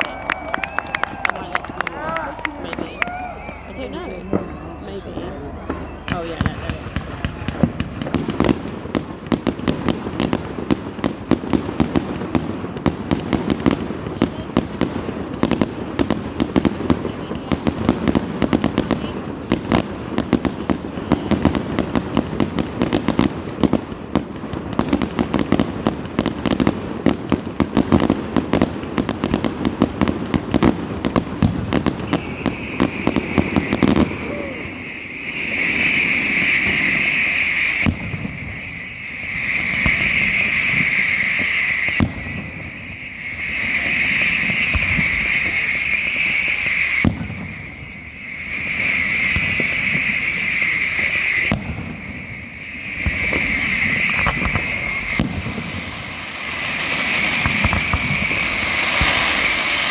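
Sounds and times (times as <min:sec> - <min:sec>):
firework whistle: 0:00.0 - 0:10.3, 0:31.1 - 0:59.9
firework crackle: 0:00.0 - 0:59.9
sharp firework bang: 0:30.1 - 0:45.7, 0:46.7 - 0:48.0, 0:51.4 - 0:56.2, 0:56.8 - 0:59.9.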